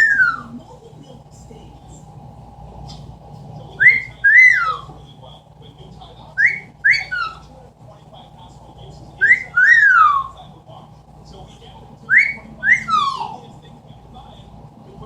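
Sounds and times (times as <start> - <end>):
parrot wolf whistle: 0.0 - 0.5, 3.8 - 4.9, 6.4 - 7.4, 9.2 - 10.3, 12.1 - 13.4.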